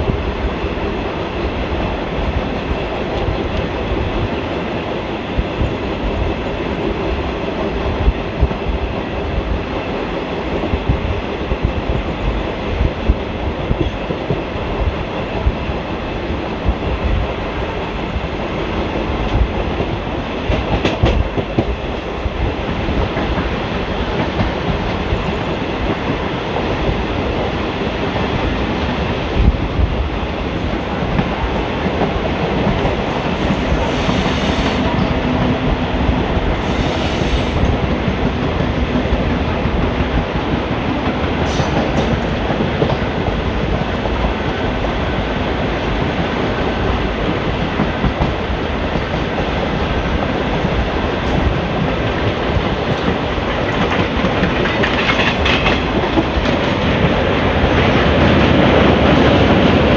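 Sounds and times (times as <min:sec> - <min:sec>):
clickety-clack of rail joints: 0:00.0 - 0:59.9
wheel and rail rumble: 0:18.9 - 0:59.9.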